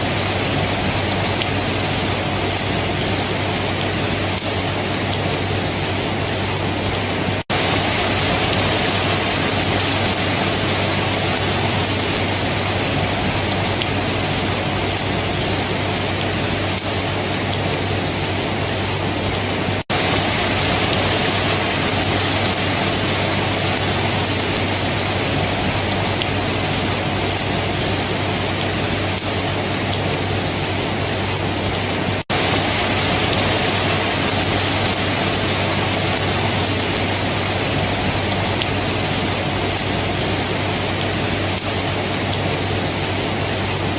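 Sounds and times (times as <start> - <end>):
heavy rain hissing: 0.0 - 43.9.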